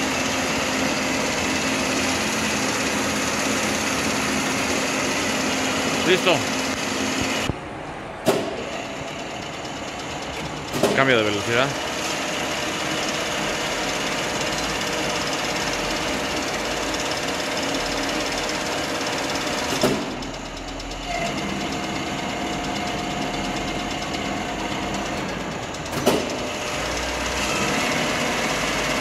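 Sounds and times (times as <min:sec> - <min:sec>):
drill gearing humming: 0:00.0 - 0:07.6, 0:08.6 - 0:29.0
machine clunk: 0:08.2 - 0:09.0, 0:10.4 - 0:11.3, 0:19.7 - 0:20.4, 0:25.8 - 0:26.6.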